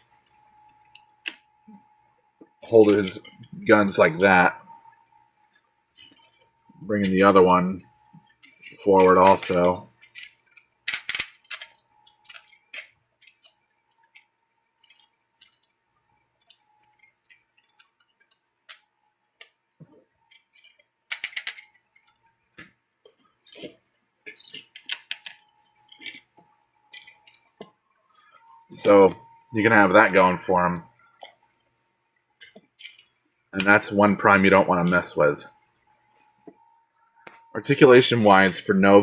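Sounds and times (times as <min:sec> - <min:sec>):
plastic toy parts clicking and clattering: 0:08.4 - 0:15.7, 0:20.3 - 0:27.7.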